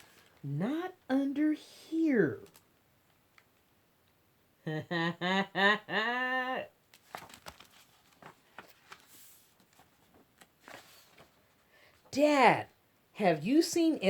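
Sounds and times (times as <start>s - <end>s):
book pages rustling: 0.0s - 0.4s, 6.9s - 12.1s
woman's drawn-out vocal sound: 4.7s - 6.8s.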